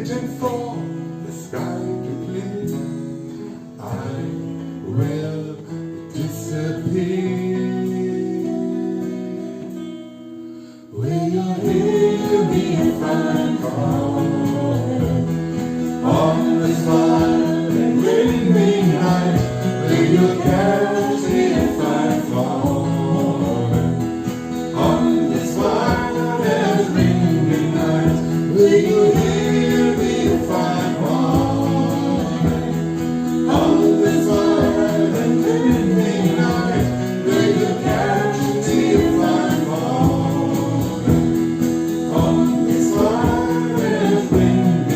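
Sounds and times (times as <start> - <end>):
instrumental backing with low notes: 6.0 - 44.9
person singing: 10.9 - 44.9.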